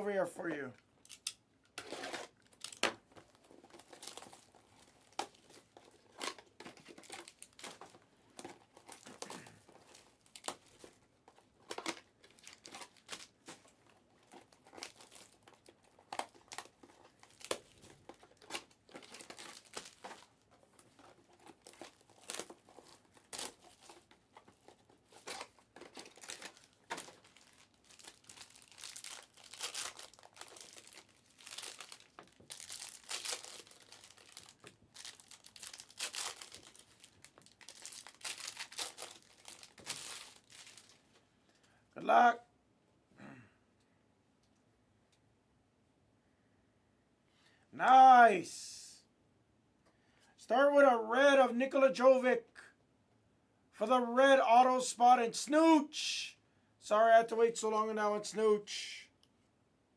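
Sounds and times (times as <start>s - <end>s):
plastic wrapping crinkling and tearing: 1.0s - 41.2s.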